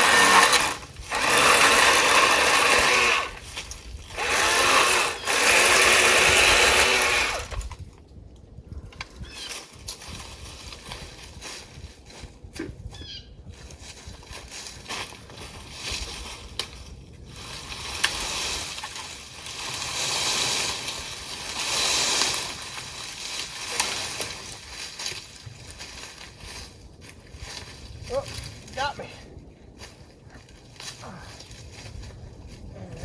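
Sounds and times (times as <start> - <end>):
branches snapping: 0.0 - 7.9, 13.6 - 29.1, 29.8 - 32.6
branches and brush rustling: 0.0 - 33.0.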